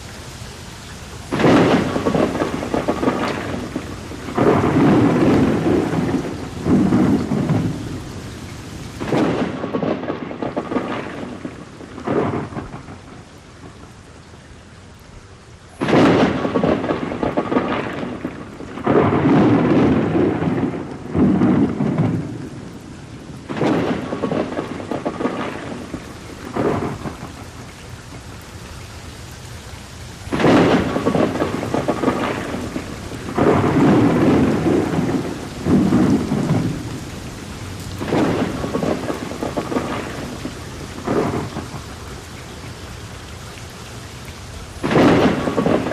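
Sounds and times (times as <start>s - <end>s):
steady rain: 0.0s - 45.9s
thunder rolling: 1.3s - 13.8s, 15.8s - 28.4s, 30.2s - 42.0s, 44.8s - 45.9s.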